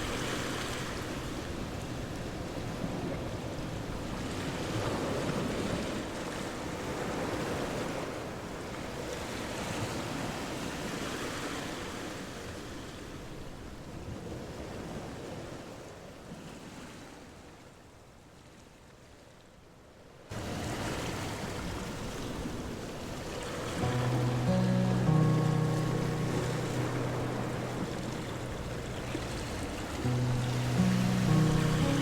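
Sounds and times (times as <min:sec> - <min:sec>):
rushing water: 0:20.3 - 0:32.0.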